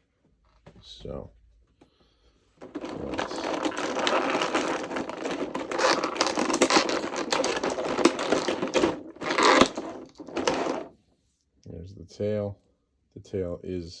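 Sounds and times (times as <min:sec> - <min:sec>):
plastic packaging crinkling: 0:02.6 - 0:10.9.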